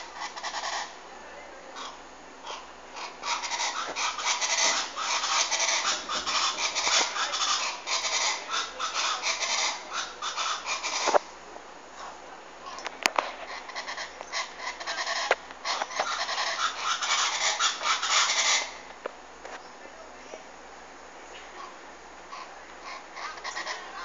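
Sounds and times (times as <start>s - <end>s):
bird making scratchy pulses: 1.8s - 11.3s, 12.0s - 18.9s.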